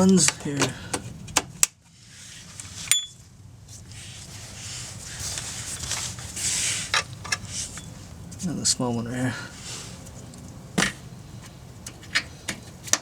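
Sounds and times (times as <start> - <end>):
handling and rustling: 2.1 - 8.6.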